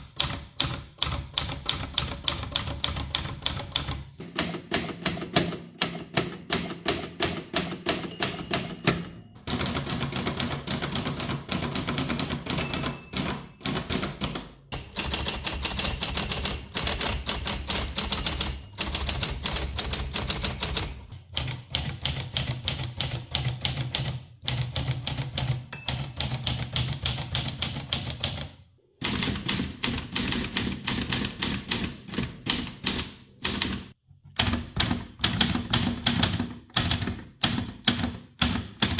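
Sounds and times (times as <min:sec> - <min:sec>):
typewriters clacking: 0:00.0 - 0:28.4.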